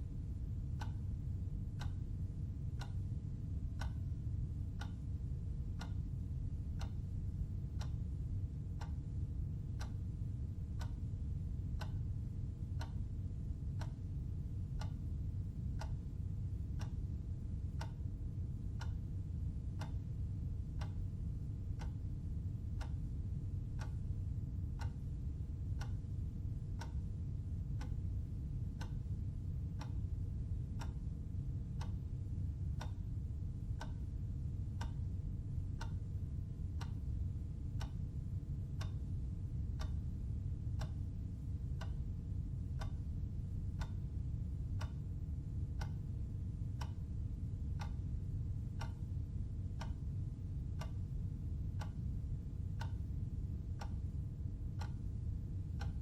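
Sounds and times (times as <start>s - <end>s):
constant low hum: 0.0s - 56.0s
clock ticking: 0.7s - 2.0s, 2.7s - 3.0s, 3.6s - 5.0s, 5.6s - 6.1s, 6.7s - 9.0s, 9.7s - 10.1s, 10.8s - 16.0s, 16.6s - 19.0s, 19.8s - 20.1s, 20.7s - 22.0s, 22.6s - 23.1s, 23.7s - 24.2s, 24.8s - 31.2s, 31.8s - 32.0s, 32.8s - 33.1s, 33.7s - 34.1s, 34.7s - 42.1s, 42.8s - 45.2s, 45.8s - 47.1s, 47.7s - 49.1s, 49.8s - 50.2s, 50.8s - 55.0s, 55.7s - 56.0s.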